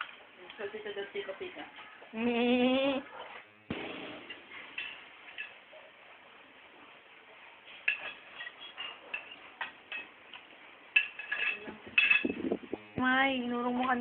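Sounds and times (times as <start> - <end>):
utensils clinking against dish: 7.8 - 12.5.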